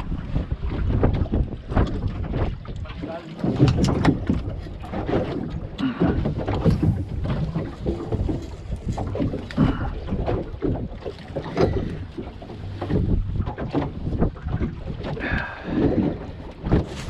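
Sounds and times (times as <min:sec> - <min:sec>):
wind buffeting microphone: 0:00.0 - 0:17.0
knocks and thumps: 0:03.4 - 0:10.8.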